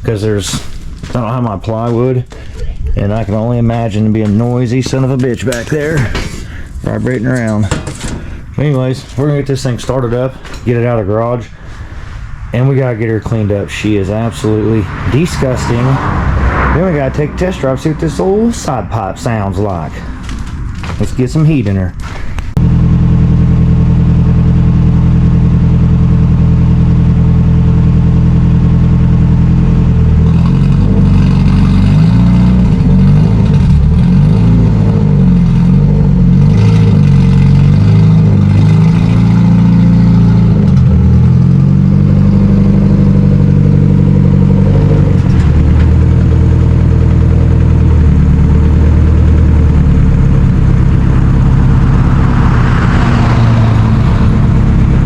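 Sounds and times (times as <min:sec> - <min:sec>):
car engine idling and revving: 0:00.0 - 0:55.0.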